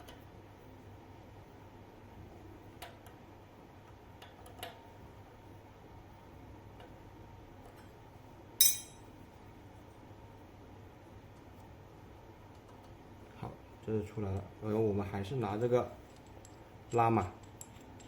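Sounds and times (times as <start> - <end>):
ringing metal clink: 8.6 - 9.1.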